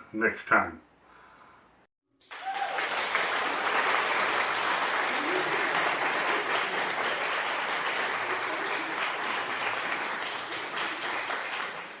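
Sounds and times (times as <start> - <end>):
audience applause: 2.2 - 12.0.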